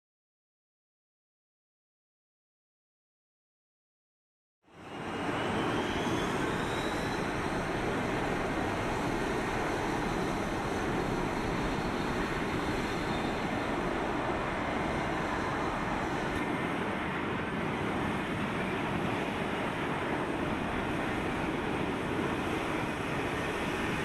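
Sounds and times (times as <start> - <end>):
jet engine roaring: 4.8 - 24.0.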